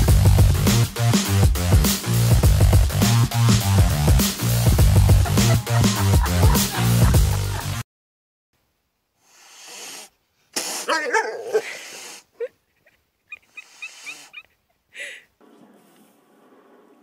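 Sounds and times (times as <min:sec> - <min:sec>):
breathy noise: 0:13.4 - 0:16.2.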